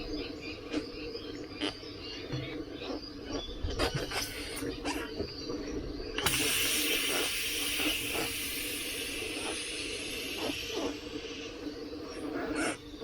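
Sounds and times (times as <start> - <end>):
air hissing from tyre valve: 6.2 - 12.4.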